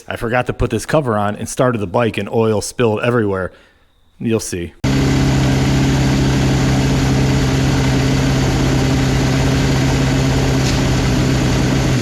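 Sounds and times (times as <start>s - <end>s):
engine electric starter whirring: 4.8s - 12.0s.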